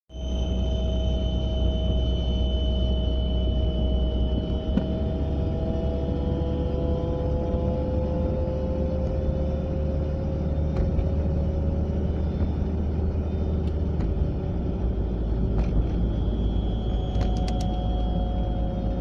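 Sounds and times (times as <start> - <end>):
car whine: 0.1 - 19.0
car road and drivetrain rumble: 3.8 - 19.0.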